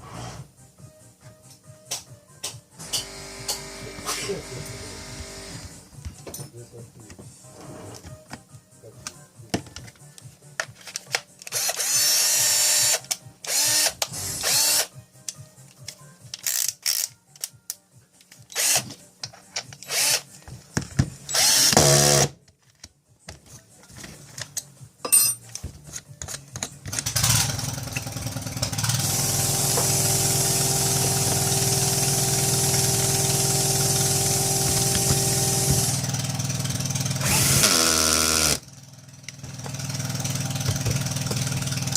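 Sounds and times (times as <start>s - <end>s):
cordless drill motor whirring: 3.0s - 5.8s, 11.5s - 14.9s, 18.6s - 18.8s, 19.8s - 20.2s, 21.3s - 22.3s, 29.0s - 36.1s, 37.2s - 38.6s.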